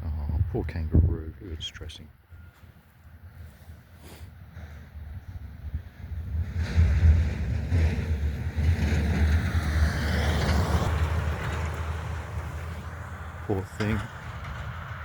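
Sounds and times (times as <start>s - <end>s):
car driving past: 6.2s - 15.0s.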